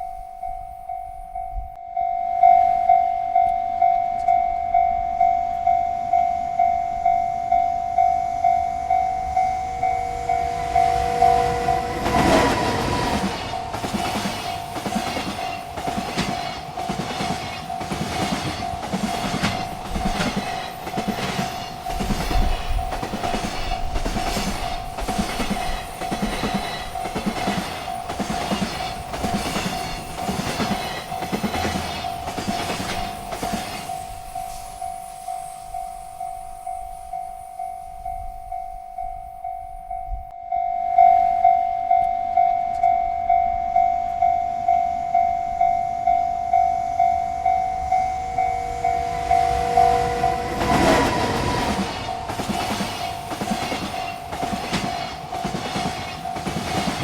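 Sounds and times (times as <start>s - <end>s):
crossing bell ringing: 0.0s - 57.0s
train wheels clickety-clack: 9.0s - 37.8s, 47.6s - 57.0s
train horn: 9.9s - 14.4s, 44.7s - 52.9s.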